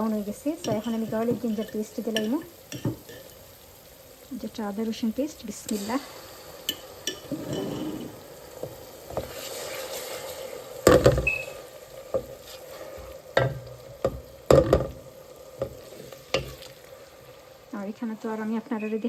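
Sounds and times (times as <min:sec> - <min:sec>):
paste sizzling in hot oil: 0:00.0 - 0:19.0
spoon knocking against pan: 0:00.6 - 0:03.3, 0:10.9 - 0:11.4, 0:13.4 - 0:16.6.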